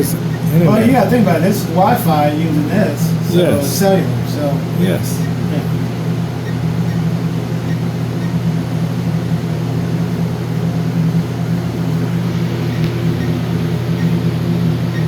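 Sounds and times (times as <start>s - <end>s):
low machine hum: 0.0s - 15.0s.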